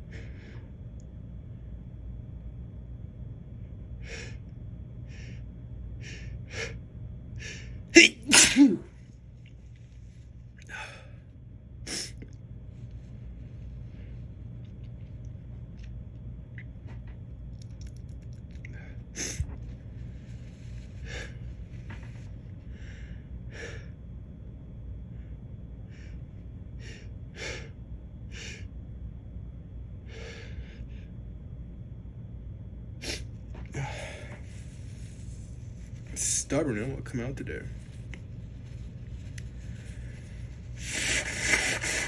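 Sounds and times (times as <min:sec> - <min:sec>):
man gasping and sniffing: 0:40.8 - 0:42.0.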